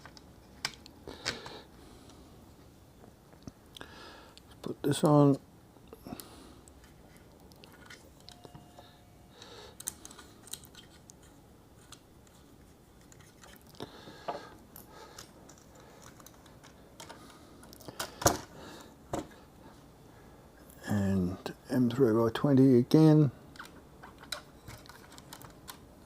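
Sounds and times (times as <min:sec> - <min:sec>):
small plastic parts clicking: 0:09.8 - 0:12.4, 0:23.5 - 0:25.8.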